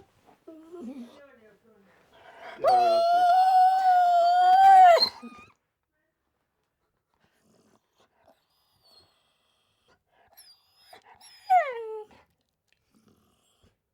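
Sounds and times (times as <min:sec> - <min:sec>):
dog whimpering: 0:00.5 - 0:01.2, 0:02.4 - 0:05.4, 0:10.8 - 0:12.1.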